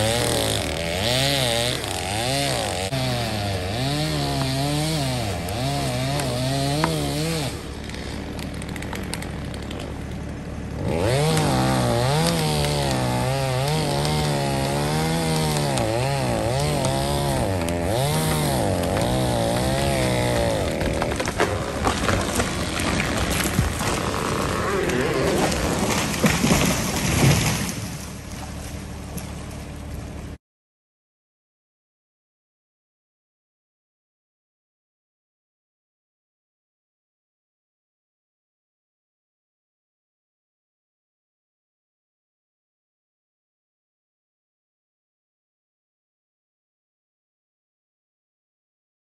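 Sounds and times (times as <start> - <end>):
chainsaw cutting wood: 0.0 - 30.4.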